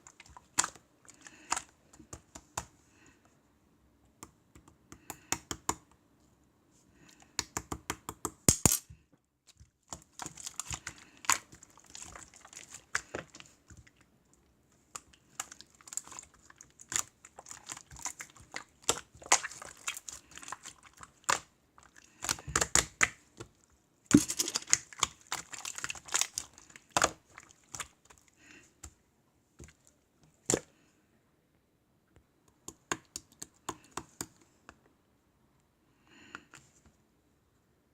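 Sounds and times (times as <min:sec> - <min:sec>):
small clicks and taps: 0:32.2 - 0:34.8.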